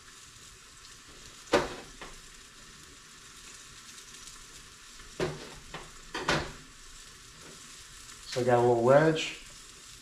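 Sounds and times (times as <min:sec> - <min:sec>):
fish frying in a pan: 0:00.0 - 0:10.0.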